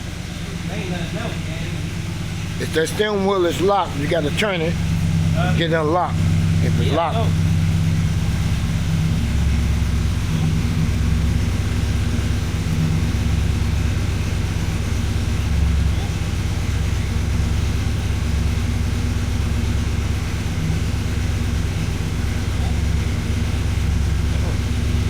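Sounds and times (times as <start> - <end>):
car engine idling: 0.0 - 25.0.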